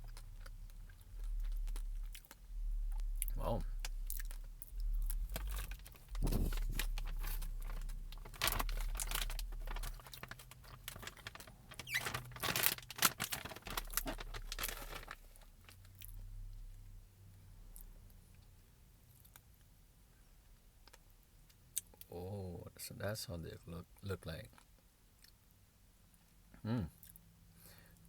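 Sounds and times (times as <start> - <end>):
plastic packaging crinkling: 5.0 - 15.5.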